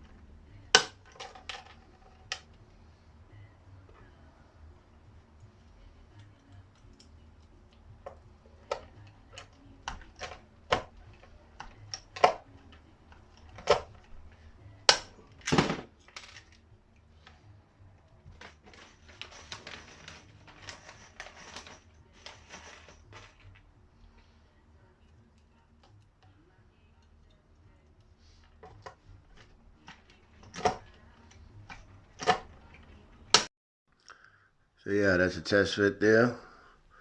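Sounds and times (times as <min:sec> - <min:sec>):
hard parts clicking and knocking: 0:06.2 - 0:16.6, 0:28.4 - 0:33.5.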